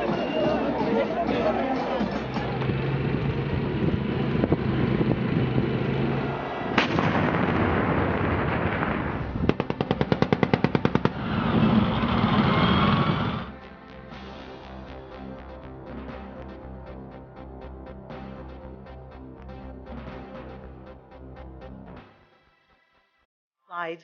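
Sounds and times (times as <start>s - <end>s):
noisy background: 0.0s - 7.0s
single gunshot: 6.8s - 7.8s
automatic gunfire burst: 9.5s - 11.8s.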